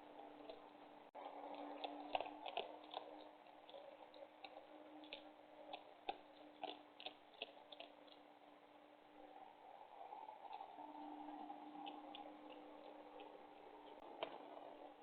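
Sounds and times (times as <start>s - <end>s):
animals chewing food: 0.0s - 15.0s
faint steady hum: 0.0s - 15.0s.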